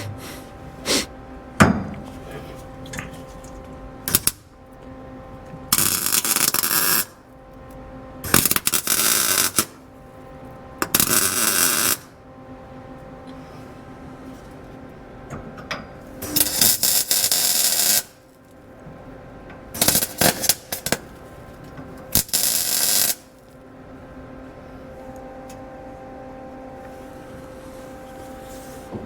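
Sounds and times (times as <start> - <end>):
steady hum: 0.0 - 29.0
welding bursts sputtering: 5.7 - 7.2, 8.2 - 9.8, 10.9 - 12.1, 16.2 - 18.2, 19.8 - 21.1, 22.1 - 23.4.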